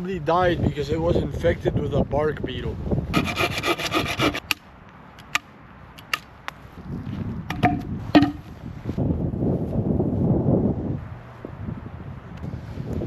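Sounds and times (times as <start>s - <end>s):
bark scraping strokes: 3.2s - 4.5s
sharp wooden knocks: 3.2s - 4.6s.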